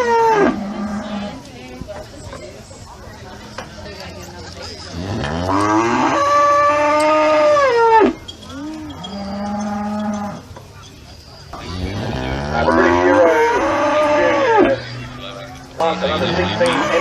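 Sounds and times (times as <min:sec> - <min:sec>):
cattle mooing: 0:04.9 - 0:10.4, 0:11.6 - 0:15.2, 0:15.8 - 0:17.0.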